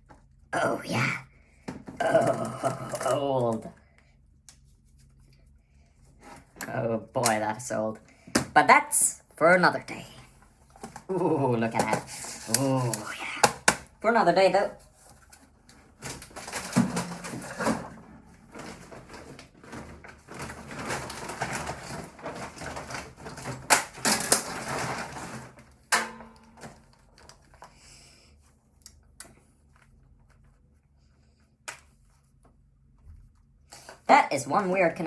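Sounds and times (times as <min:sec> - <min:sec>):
plastic clattering and scraping: 0:10.6 - 0:13.9, 0:14.7 - 0:27.8.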